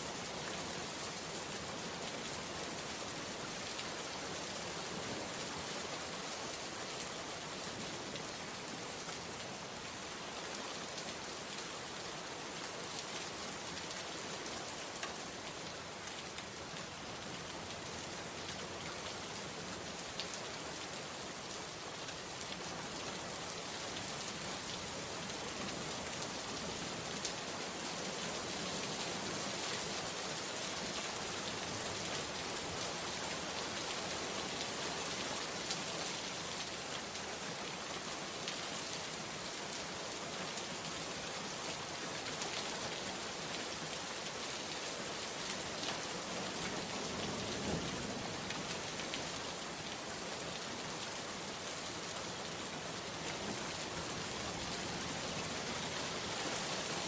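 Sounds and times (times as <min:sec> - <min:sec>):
steady rain hiss: 0:00.0 - 0:57.0.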